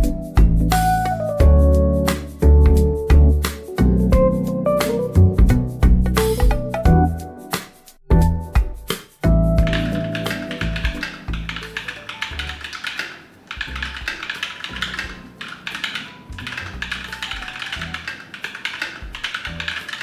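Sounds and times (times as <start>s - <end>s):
mechanical keyboard typing: 9.6s - 20.0s.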